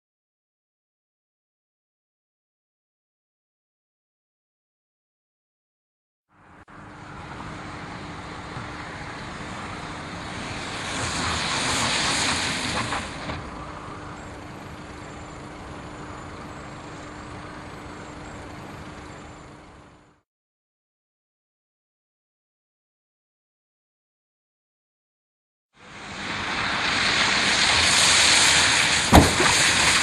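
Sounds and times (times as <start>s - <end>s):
tyre and road noise: 6.3s - 20.2s, 25.8s - 30.0s
loud hiss: 8.9s - 15.2s, 25.8s - 30.0s.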